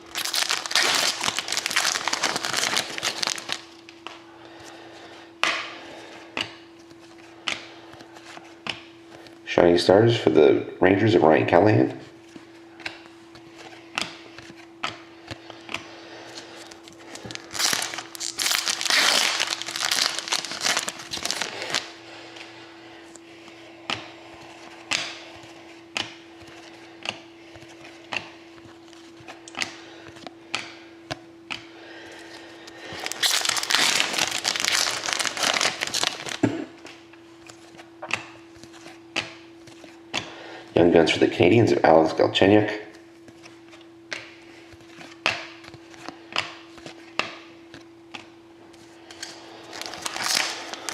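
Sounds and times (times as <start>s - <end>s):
foil packs tearing and crinkling: 0.0s - 3.9s, 16.6s - 22.0s, 32.8s - 36.6s, 49.2s - 50.9s
faint hum: 0.0s - 50.9s
cards flipping and snapping: 0.1s - 4.2s, 16.6s - 21.9s, 32.9s - 36.4s, 49.1s - 50.9s.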